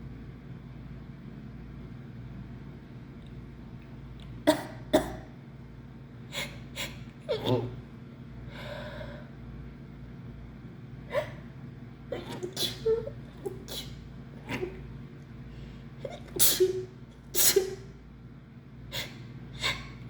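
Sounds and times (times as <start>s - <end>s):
woman sneezing: 12.2s - 14.8s, 16.0s - 17.9s.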